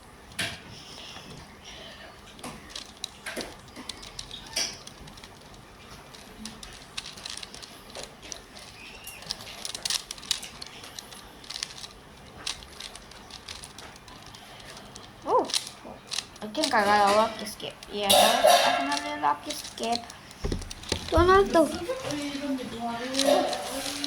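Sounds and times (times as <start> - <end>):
puzzle cube plastic clicks: 0.3 - 24.0.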